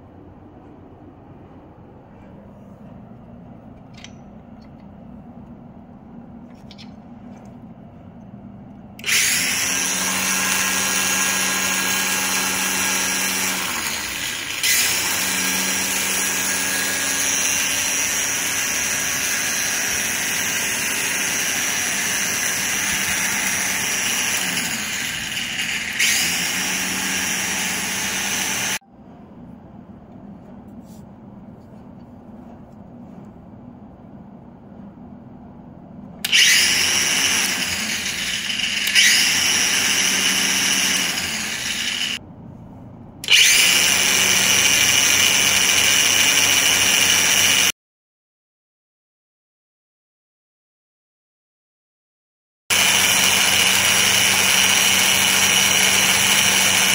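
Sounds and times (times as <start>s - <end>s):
string trimmer motor whine: 9.0s - 28.8s, 36.2s - 42.2s, 43.2s - 47.7s, 52.7s - 56.9s.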